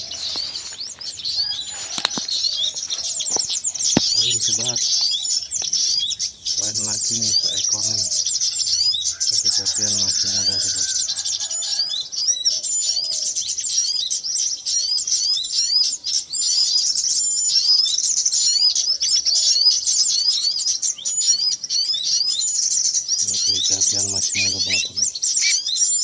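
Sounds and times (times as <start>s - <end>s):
songbirds twittering: 0.0s - 26.0s.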